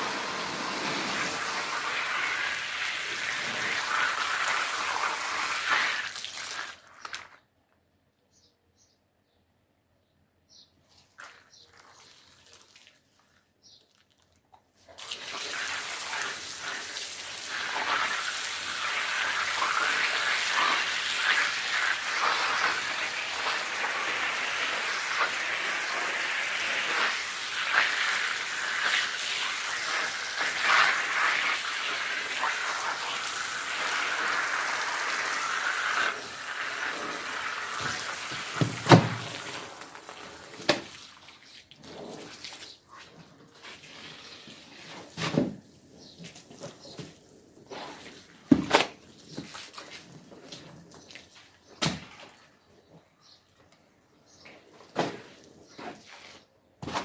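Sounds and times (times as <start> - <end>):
water spraying on carpet: 0.0 - 7.3, 14.9 - 51.5.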